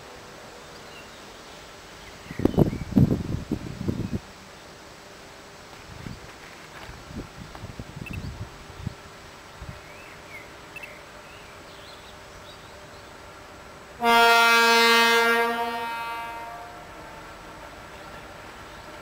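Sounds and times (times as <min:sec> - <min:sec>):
locomotive horn blast: 0:14.0 - 0:18.2.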